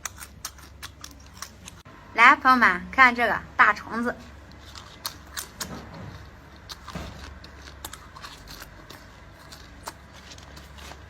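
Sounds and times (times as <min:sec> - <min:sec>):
insect being chewed crunching: 0:00.0 - 0:01.9, 0:04.4 - 0:11.0
low steady hum: 0:00.0 - 0:11.0.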